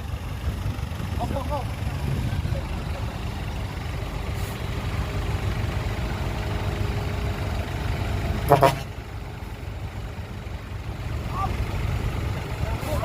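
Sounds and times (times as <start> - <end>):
diesel engine rumbling: 0.0 - 13.0
loud pitched horn blast: 8.5 - 8.9.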